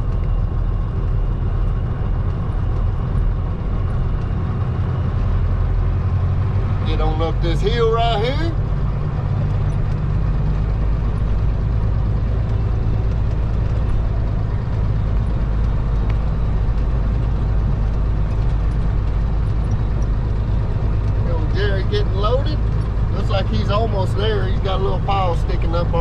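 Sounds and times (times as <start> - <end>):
truck diesel engine droning: 0.0 - 26.0.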